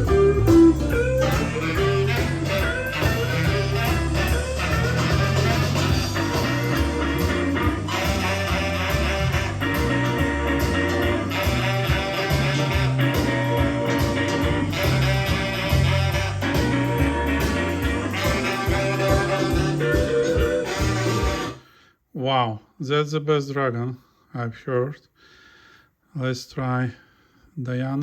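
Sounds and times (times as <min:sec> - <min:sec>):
band music through speakers: 0:00.0 - 0:21.6.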